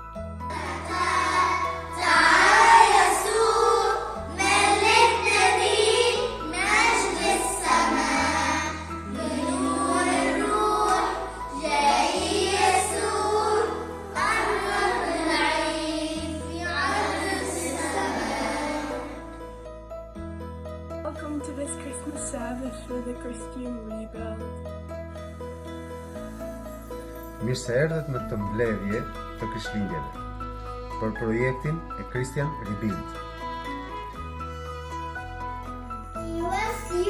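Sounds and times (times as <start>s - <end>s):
voices singing: 0.5s - 19.4s.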